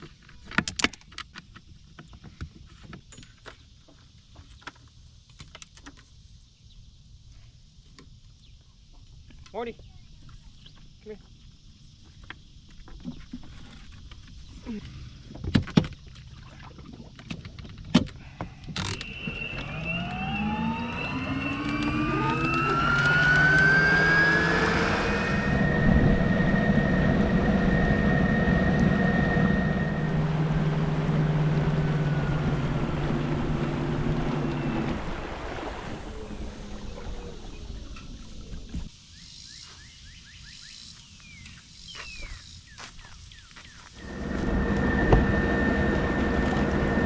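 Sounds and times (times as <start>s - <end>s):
electric motor whine: 18.8s - 37.0s, 44.0s - 47.0s.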